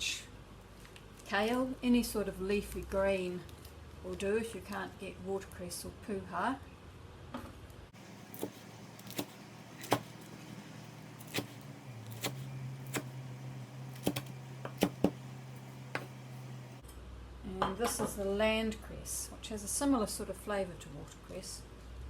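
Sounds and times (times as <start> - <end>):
knife chopping on cutting board: 8.0 - 16.8.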